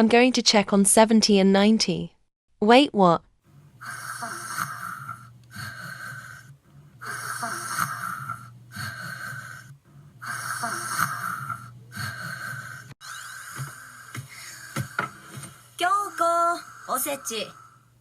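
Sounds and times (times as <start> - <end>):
cartoon snoring: 3.7 - 18.0.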